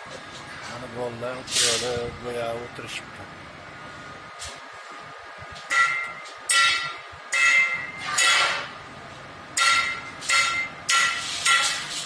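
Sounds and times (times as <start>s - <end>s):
hammer striking steel: 5.7s - 8.8s, 9.6s - 12.0s.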